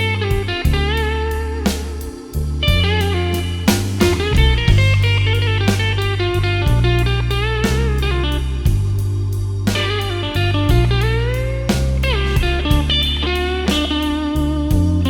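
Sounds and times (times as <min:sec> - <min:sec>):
electric blues band: 0:00.0 - 0:15.0
electric guitar sliding notes: 0:09.7 - 0:15.0.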